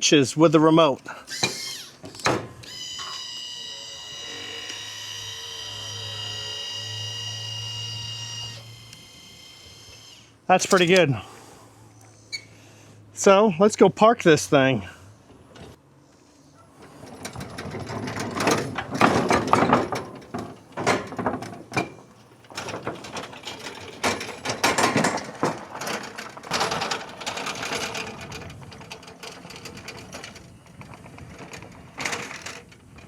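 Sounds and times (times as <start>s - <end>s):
electric motors whirring: 1.3s - 10.4s
tracks rattling: 16.6s - 33.0s.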